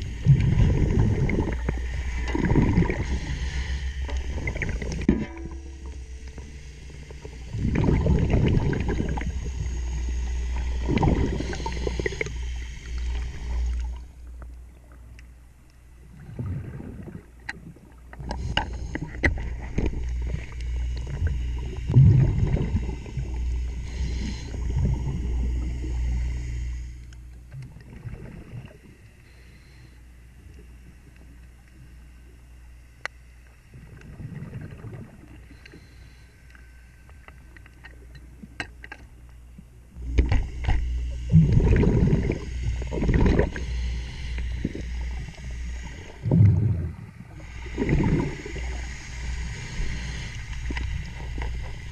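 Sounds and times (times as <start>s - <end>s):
exhaust bubbles rushing: 0.0s - 3.4s, 7.4s - 9.5s, 10.7s - 12.3s, 21.2s - 23.4s, 41.3s - 43.6s, 45.9s - 47.1s, 47.7s - 48.6s
scuba diver breathing: 0.0s - 14.4s, 18.2s - 27.5s, 28.8s - 30.4s, 35.3s - 37.0s, 40.0s - 51.9s
steady low hum: 0.0s - 51.9s.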